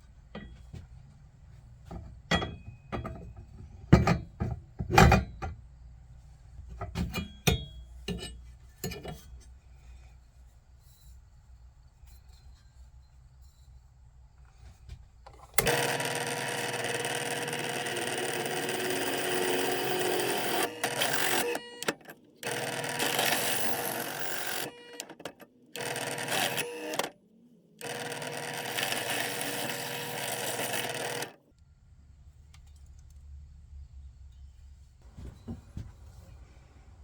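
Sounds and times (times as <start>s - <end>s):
power tool whining on metal: 15.6s - 27.2s, 27.8s - 31.4s.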